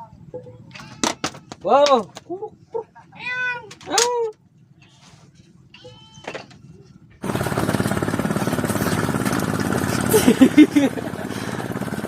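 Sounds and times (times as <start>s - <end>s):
small engine chugging: 7.2s - 12.0s.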